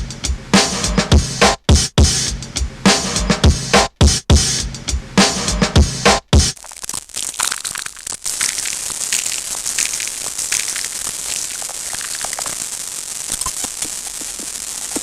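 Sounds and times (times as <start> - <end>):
dense crackling clicks: 6.5 - 15.0.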